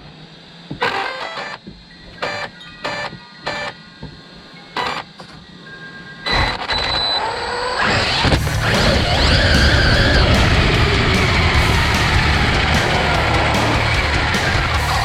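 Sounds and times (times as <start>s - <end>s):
electric motor whining: 6.5s - 15.0s
heavy rock music: 8.3s - 15.0s.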